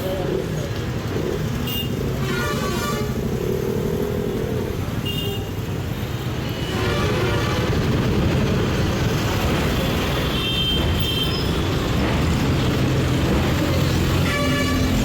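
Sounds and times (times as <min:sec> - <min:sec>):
road traffic rumbling: 0:00.0 - 0:15.0
vehicle horn toots: 0:01.6 - 0:03.2, 0:14.2 - 0:15.0.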